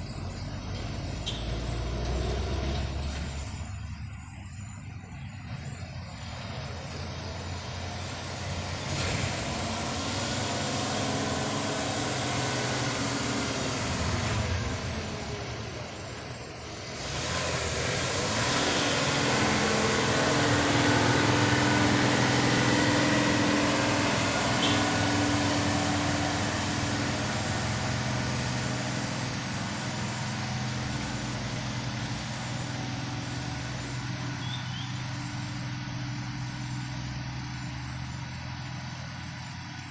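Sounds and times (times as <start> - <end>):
road traffic tyre noise: 0.0 - 39.9
truck diesel engine: 0.0 - 39.9.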